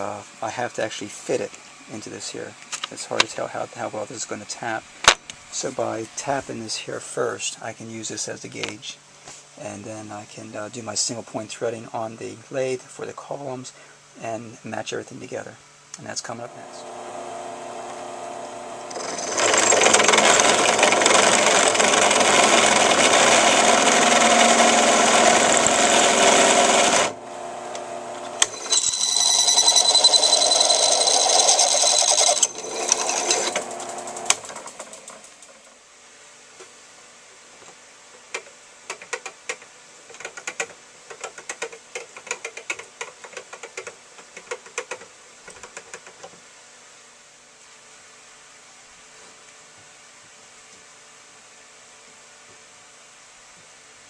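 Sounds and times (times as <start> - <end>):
power tool motor whining: 16.6 - 34.8.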